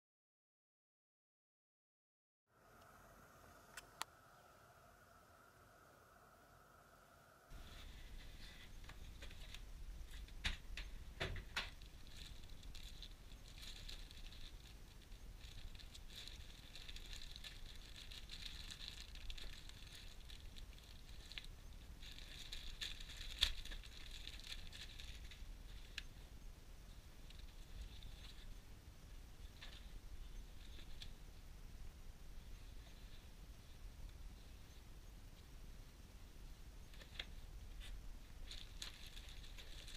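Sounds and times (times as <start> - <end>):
packaging rustling: 7.5 - 26.0, 37.0 - 39.9.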